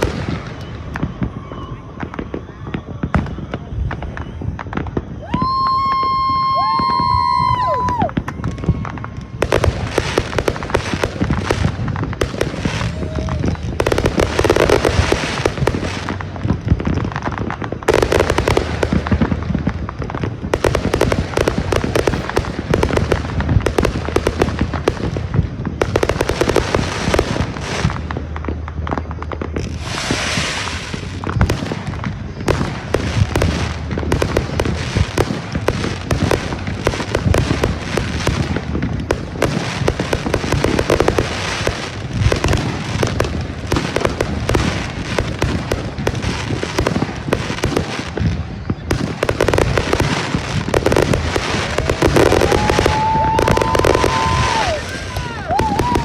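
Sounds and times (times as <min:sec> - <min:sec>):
fireworks cracking and banging: 0:00.0 - 0:56.0
fireworks crackling: 0:00.0 - 0:56.0
firework hissing burst: 0:29.3 - 0:56.0.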